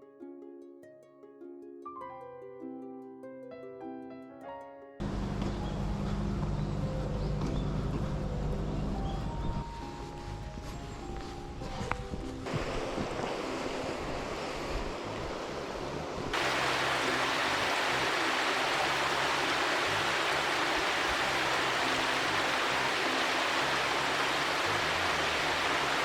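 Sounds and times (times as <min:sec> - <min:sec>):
rushing water: 0:12.0 - 0:26.0.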